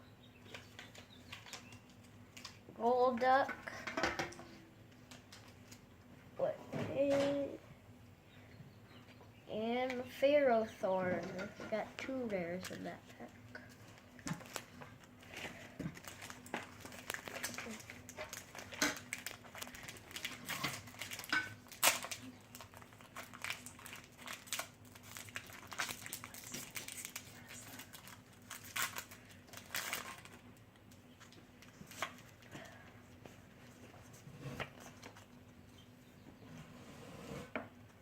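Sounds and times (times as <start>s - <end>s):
faint steady hum: 0.0s - 38.0s
foil wrapper crinkling: 13.6s - 32.8s.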